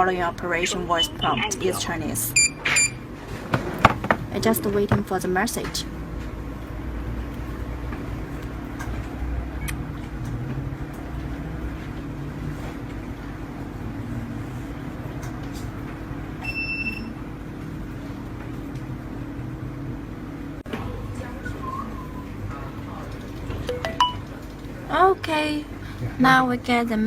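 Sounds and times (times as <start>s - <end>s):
low background hum: 0.0s - 27.0s
short high electronic beep: 2.4s - 3.0s.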